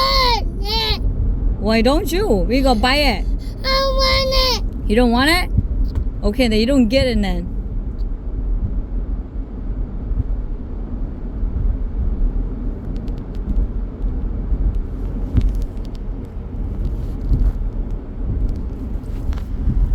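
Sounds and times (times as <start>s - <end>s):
car cabin road rumble: 0.0s - 7.7s.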